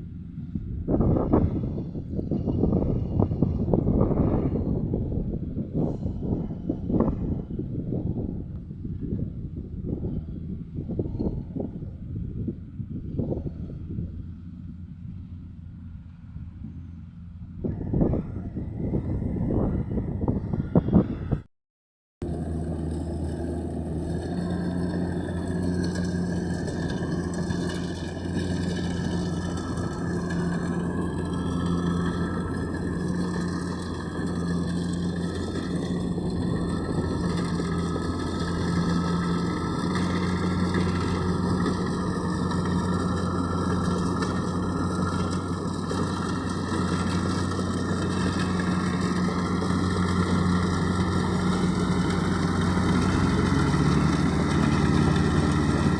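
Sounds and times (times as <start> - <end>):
diesel engine drone: 0.0 - 21.5, 22.2 - 55.9
machinery noise: 22.2 - 55.9.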